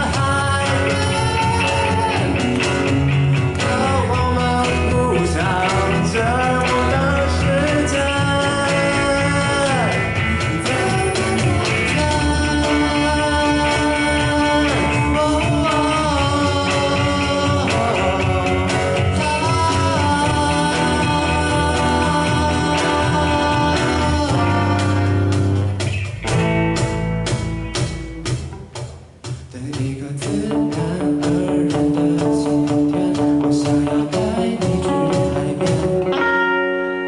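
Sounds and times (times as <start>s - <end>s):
person singing lead vocals: 0.0s - 25.8s, 29.4s - 37.0s
band playing pop-rock live: 0.0s - 37.0s.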